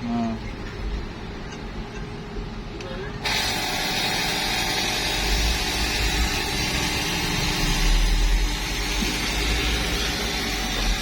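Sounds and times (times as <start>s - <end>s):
fogging machine rushing noise: 3.2s - 11.0s.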